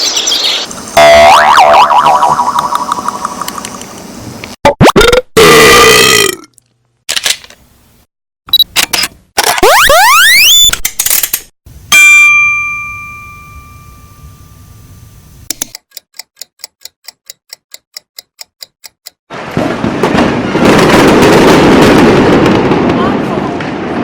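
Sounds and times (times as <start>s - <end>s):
bell-like ding: 11.9s - 14.7s
sharp evenly spaced ticks: 15.5s - 19.2s.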